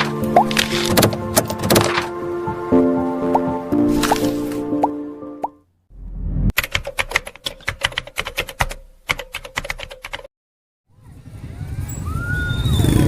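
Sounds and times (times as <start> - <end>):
rapid sharp clicks: 6.6 - 10.3
outdoor noise: 10.8 - 13.0.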